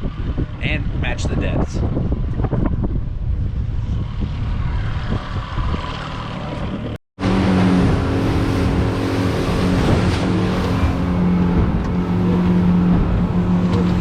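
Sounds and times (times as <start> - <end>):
boat motor droning: 5.5 - 14.0.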